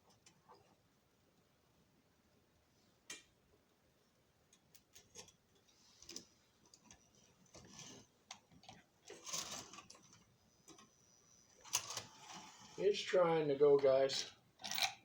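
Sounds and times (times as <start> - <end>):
toy train motor whirring: 11.6 - 13.1.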